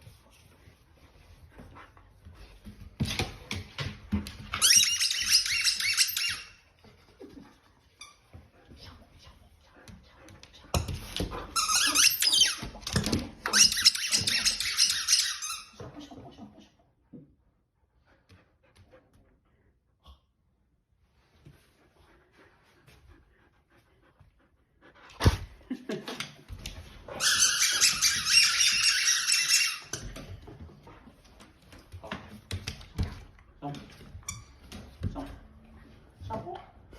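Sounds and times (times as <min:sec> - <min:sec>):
dog whining and squealing: 0:04.6 - 0:06.6, 0:11.6 - 0:12.7, 0:13.5 - 0:15.8, 0:27.1 - 0:30.1.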